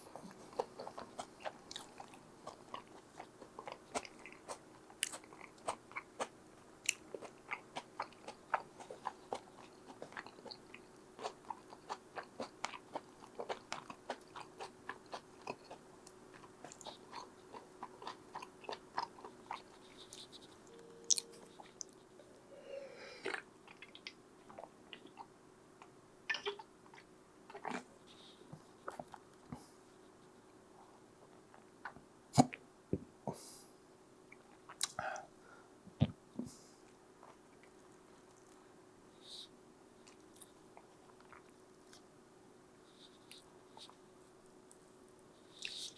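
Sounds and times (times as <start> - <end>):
chewing crunchy food: 0.0 - 22.1, 23.2 - 30.3, 39.3 - 42.1, 43.0 - 45.9.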